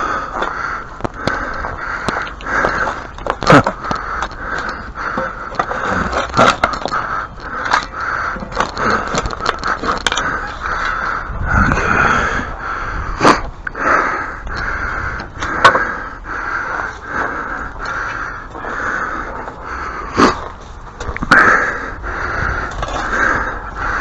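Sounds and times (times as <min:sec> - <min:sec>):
hand tool scraping brick rubble: 0:02.2 - 0:10.8.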